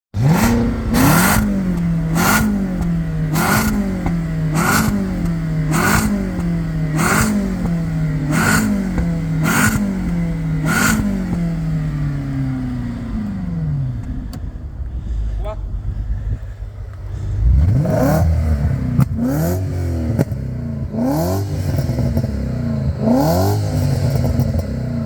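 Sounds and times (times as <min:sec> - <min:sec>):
engine revving in throttle blips: 0:00.1 - 0:15.4, 0:16.9 - 0:25.0.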